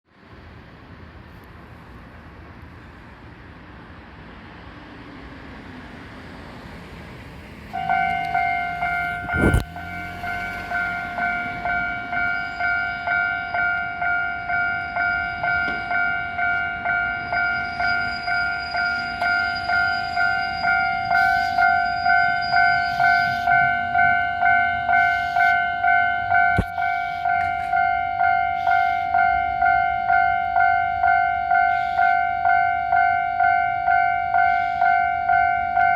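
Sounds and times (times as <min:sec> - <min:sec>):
level crossing warning bell: 0:07.7 - 0:35.9.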